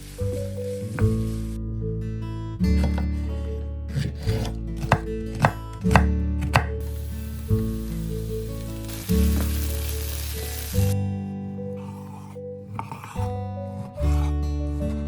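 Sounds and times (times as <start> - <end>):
steady hiss: 0.0 - 1.6, 6.8 - 11.0
music with low held notes: 0.0 - 15.0.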